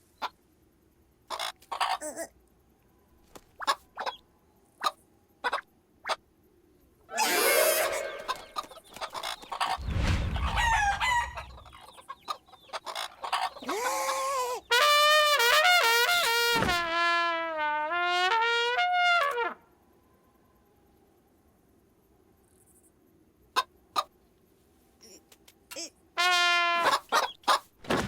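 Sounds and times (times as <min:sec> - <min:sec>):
cartoon chicken clucks and squawks: 0:01.3 - 0:02.4, 0:03.6 - 0:04.2, 0:04.8 - 0:06.3, 0:07.1 - 0:09.8, 0:10.4 - 0:14.8, 0:23.5 - 0:24.2, 0:26.8 - 0:27.7
trumpet playing wavering tune: 0:07.1 - 0:08.7
low rumble: 0:09.8 - 0:11.8.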